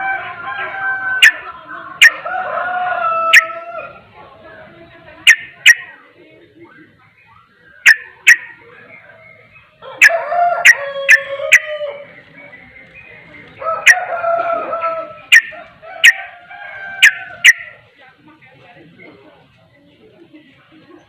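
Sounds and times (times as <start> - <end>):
bird chattering song: 4.8 - 14.1, 15.0 - 16.3
sharp bird clicking notes: 5.3 - 5.9, 7.8 - 8.6, 10.0 - 11.7, 15.3 - 16.2.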